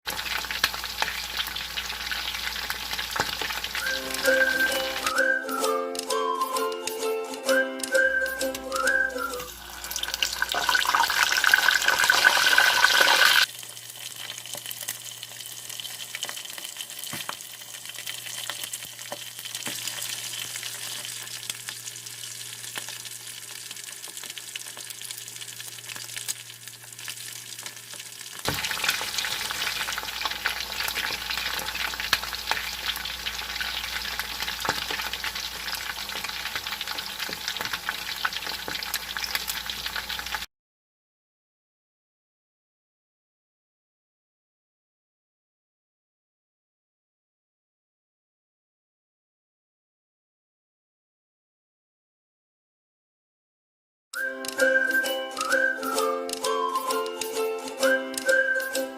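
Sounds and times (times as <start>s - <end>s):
chicken sizzling in oil: 0.1s - 5.6s, 7.8s - 40.5s.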